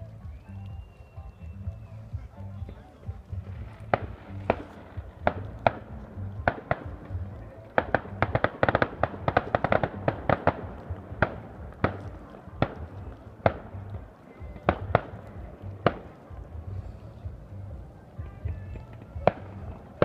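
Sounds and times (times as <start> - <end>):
music with low bass line: 0.0 - 20.0
fireworks bangs and cracks: 2.6 - 16.6.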